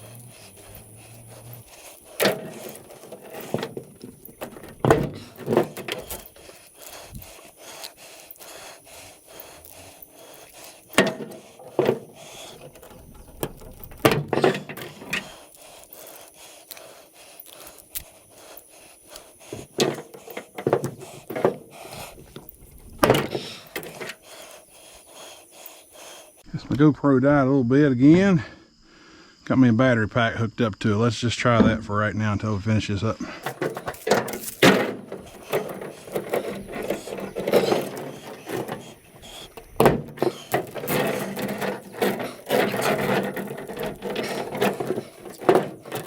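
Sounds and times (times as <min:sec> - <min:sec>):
scrap metal knocks and clanks: 0:00.0 - 0:07.4, 0:10.2 - 0:15.4, 0:19.4 - 0:24.3, 0:33.4 - 0:46.0
metal rubbing and scraping: 0:00.0 - 0:16.2, 0:16.8 - 0:24.5, 0:33.4 - 0:46.0.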